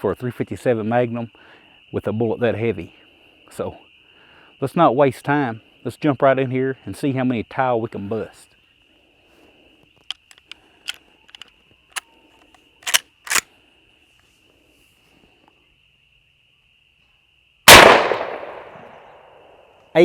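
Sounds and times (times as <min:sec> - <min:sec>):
rifle shot echoing: 0:12.8 - 0:13.4, 0:17.7 - 0:18.8.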